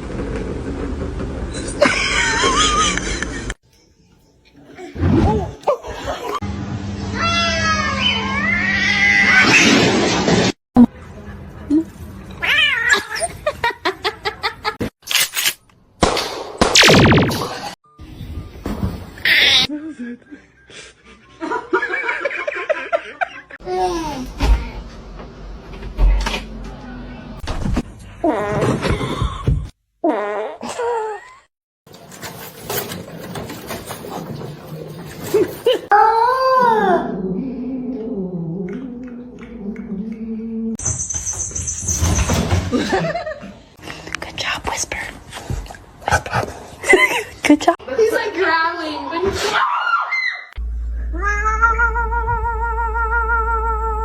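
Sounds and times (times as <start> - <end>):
cats meowing and yowling: 7.2 - 9.6, 51.2 - 54.0.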